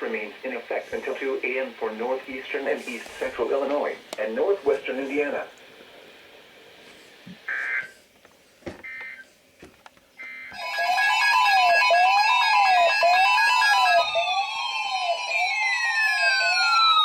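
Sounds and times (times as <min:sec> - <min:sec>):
electronic siren wail: 0:10.2 - 0:17.0.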